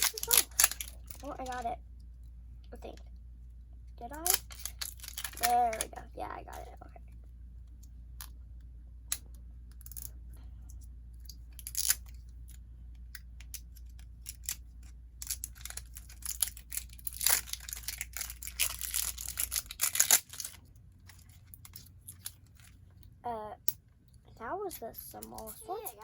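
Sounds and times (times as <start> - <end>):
plastic packaging clicks: 0.0 - 1.6, 4.1 - 5.9, 15.2 - 22.7
plastic packaging crinkling: 0.0 - 1.7, 4.1 - 6.0, 14.2 - 22.8.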